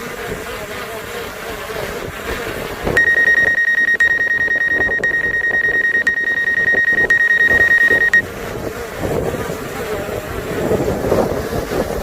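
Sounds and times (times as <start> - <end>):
electronic alarm beep: 3.0 - 8.2.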